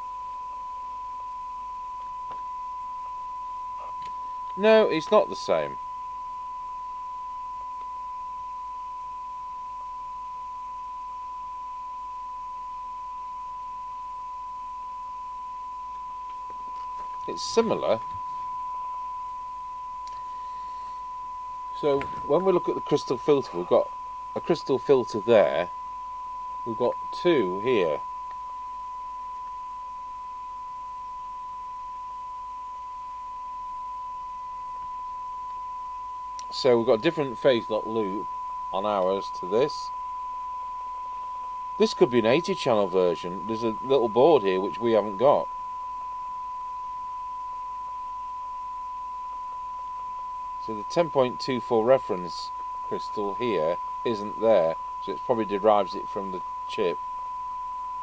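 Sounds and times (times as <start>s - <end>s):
radio loudspeaker test tone: 0.0s - 58.0s.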